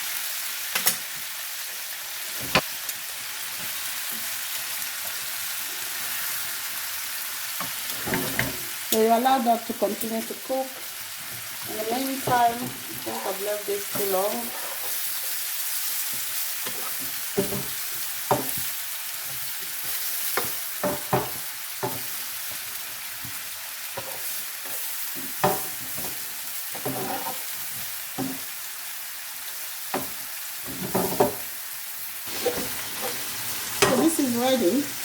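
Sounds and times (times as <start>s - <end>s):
food sizzling in oil: 0.0s - 35.0s
utensil scraping and knocking pan: 26.8s - 27.4s.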